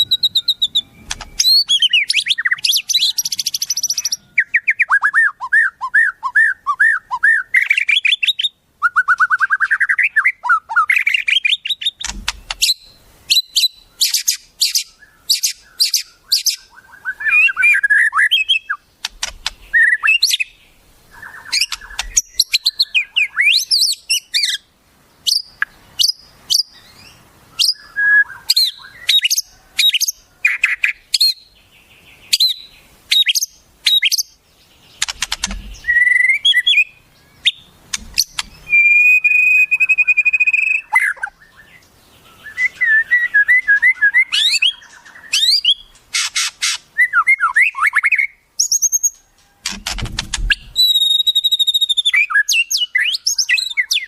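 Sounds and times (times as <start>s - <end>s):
songbirds chirping and whistling: 0.0s - 54.0s.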